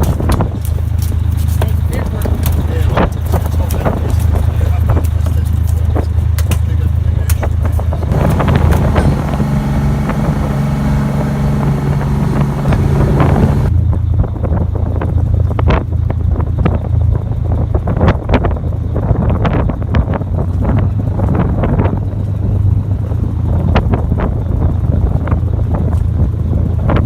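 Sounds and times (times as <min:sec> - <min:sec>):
engine running: 0:00.0 - 0:27.0
wind on microphone: 0:07.5 - 0:27.0
steady higher tones: 0:08.1 - 0:13.7.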